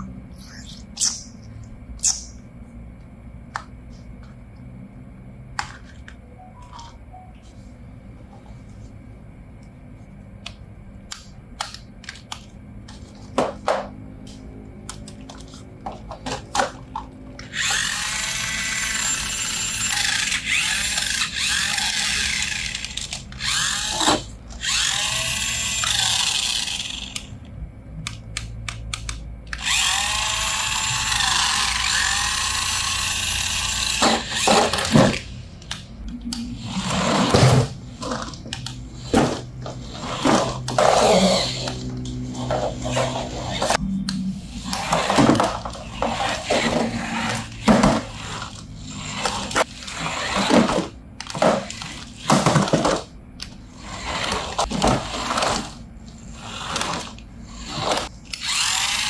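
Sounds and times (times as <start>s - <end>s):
toy electric motor whining: 17.4s - 27.4s, 29.5s - 43.8s, 44.4s - 59.0s.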